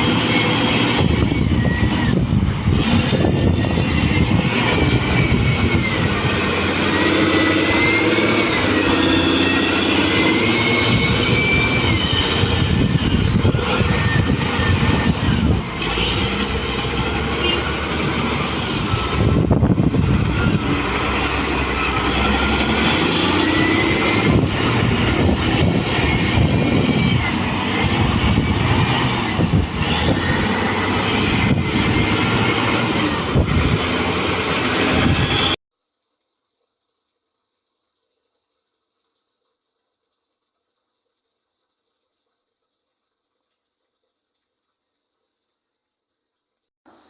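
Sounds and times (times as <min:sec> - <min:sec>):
faint wavering squeals: 0:00.0 - 0:32.8
heavy machinery engine rumble: 0:00.0 - 0:35.6.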